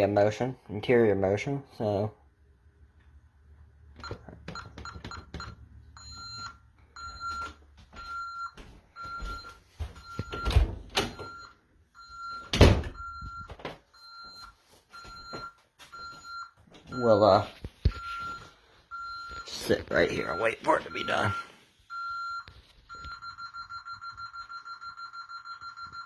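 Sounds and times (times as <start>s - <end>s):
keypad key-press beeps: 4.0s - 6.5s
alarm keypad countdown beeps: 4.0s - 17.4s, 18.0s - 26.0s.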